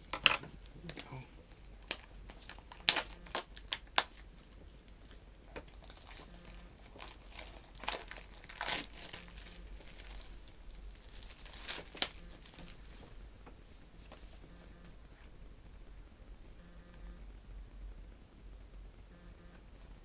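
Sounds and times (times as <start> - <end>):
plastic wrapping tearing and crinkling: 0.0 - 14.6.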